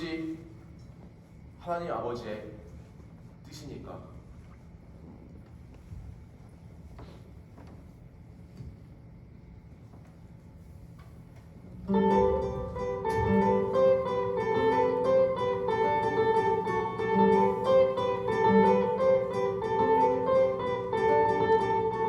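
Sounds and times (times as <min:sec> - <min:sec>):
acoustic guitar picking chords: 0:11.9 - 0:22.0.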